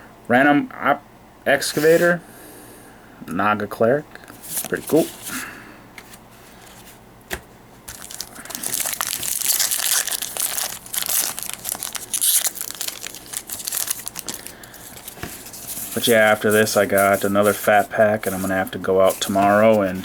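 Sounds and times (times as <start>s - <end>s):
foil wrapper crinkling and tearing: 7.9s - 17.6s.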